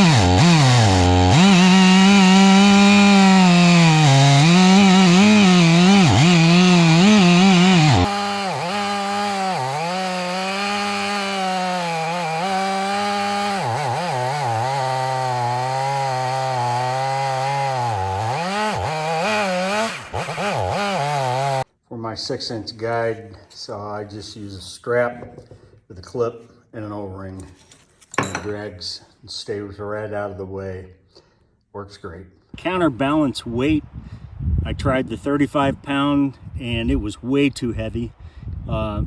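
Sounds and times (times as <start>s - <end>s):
chainsaw cutting through log: 0.0s - 21.7s.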